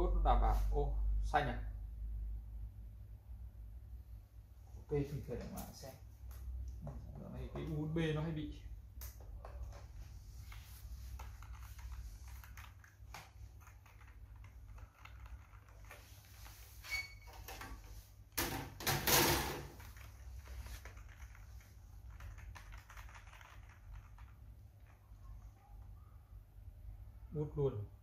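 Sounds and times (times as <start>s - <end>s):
keyboard clicks and taps: 20.8s - 25.0s.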